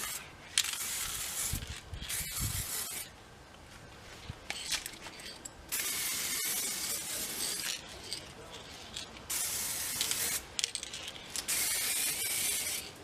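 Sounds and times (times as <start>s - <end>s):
spray paint can hissing: 0.0s - 3.1s, 5.7s - 7.8s, 9.3s - 10.7s, 11.3s - 13.0s.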